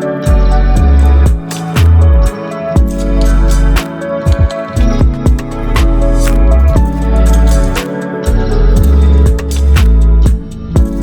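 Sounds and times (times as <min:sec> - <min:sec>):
keyboard chords: 0:00.0 - 0:11.0
heavy bass with regular beat: 0:00.3 - 0:11.0.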